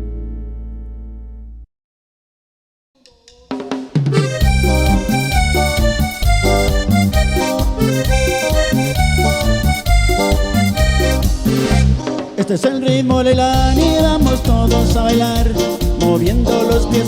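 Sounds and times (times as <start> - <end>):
drum kit: 3.2 - 17.0
latin dance song: 3.5 - 17.0
accordion: 4.1 - 12.4, 13.6 - 17.0.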